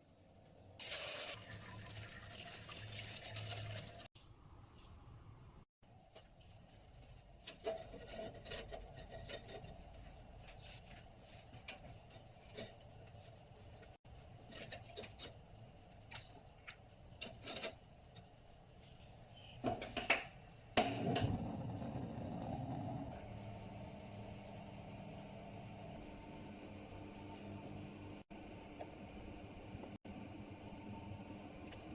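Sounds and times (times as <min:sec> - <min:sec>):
utensils scraping and clicking: 0:07.4 - 0:09.9, 0:11.6 - 0:15.5, 0:17.2 - 0:18.3.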